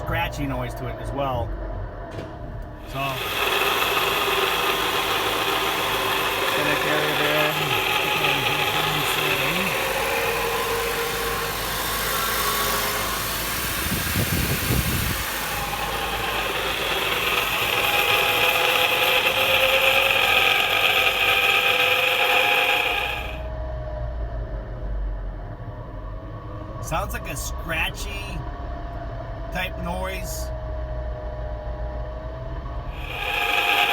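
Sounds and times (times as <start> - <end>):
scratchy grinding whir: 2.6 - 23.5, 32.8 - 33.9.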